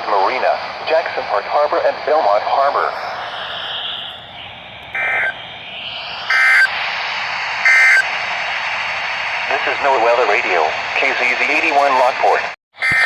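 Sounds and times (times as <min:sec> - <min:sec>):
radio receiver hiss: 0:00.0 - 0:13.0
digital data bursts: 0:03.0 - 0:06.8, 0:07.6 - 0:08.1.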